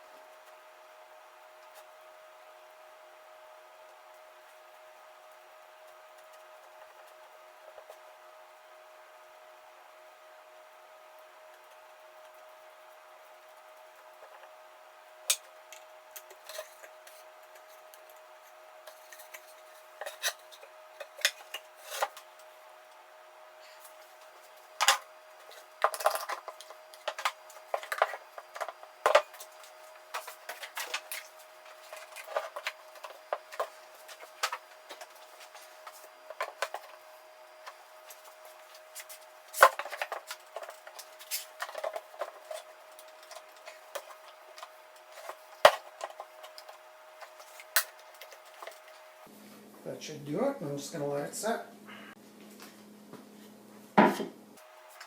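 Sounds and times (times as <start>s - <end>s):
faint hum: 0.0s - 55.0s
wood and tools knocking: 24.8s - 37.0s, 39.0s - 49.0s.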